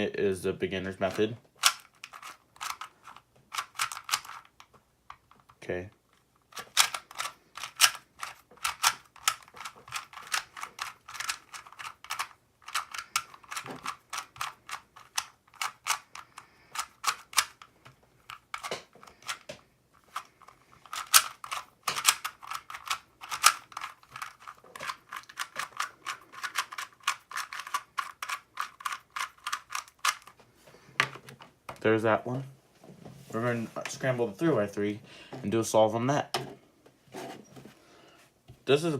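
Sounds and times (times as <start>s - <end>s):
puzzle cube clicking as turned: 1.0s - 30.4s.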